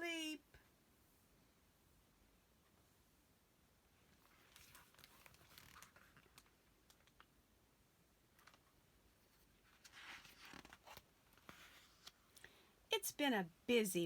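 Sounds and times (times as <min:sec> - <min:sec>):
book pages turning: 0:04.1 - 0:07.3, 0:08.3 - 0:12.4.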